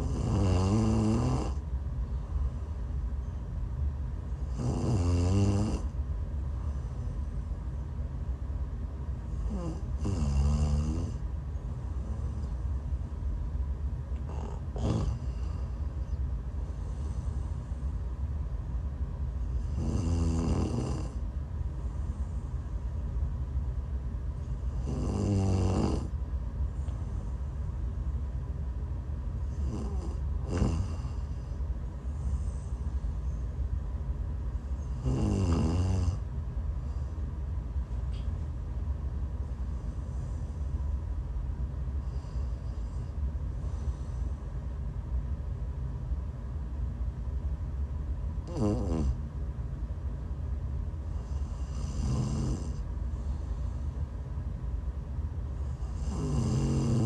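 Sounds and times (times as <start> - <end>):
woman snoring: 0.0 - 1.6, 4.4 - 5.9, 9.3 - 11.2, 14.2 - 15.8, 19.6 - 21.2, 24.7 - 26.1, 29.4 - 31.4, 34.9 - 36.2, 48.4 - 49.2, 51.3 - 52.8, 55.7 - 57.0
steady low hum: 0.0 - 57.0.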